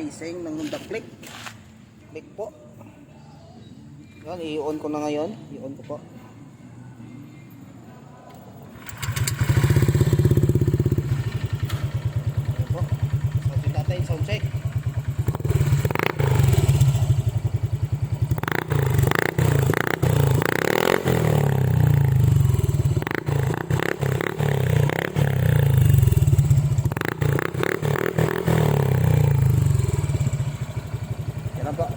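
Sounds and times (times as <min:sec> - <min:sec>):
scooter engine revving: 0:08.8 - 0:31.9.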